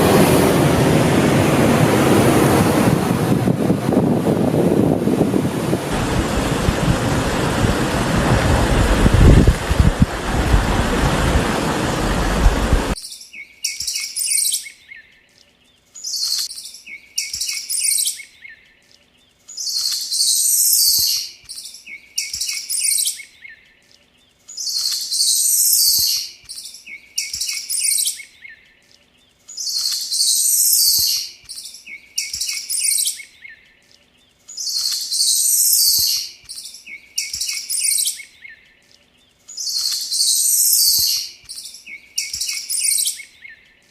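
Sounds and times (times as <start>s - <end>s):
loud rushing noise: 0.0s - 13.0s
bird chirping: 13.0s - 43.9s.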